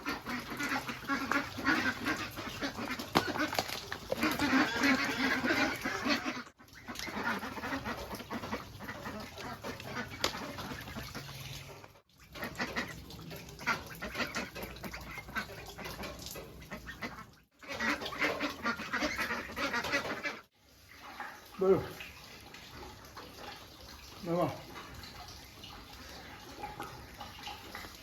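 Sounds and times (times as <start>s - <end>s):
waterfowl quacking: 0.0s - 11.5s, 12.3s - 20.5s.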